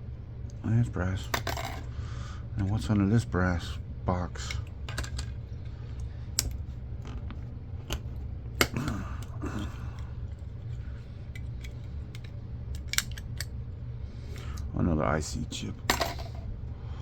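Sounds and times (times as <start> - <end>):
steady low hum: 0.0 - 17.0
plastic parts clicking and creaking: 11.3 - 13.5.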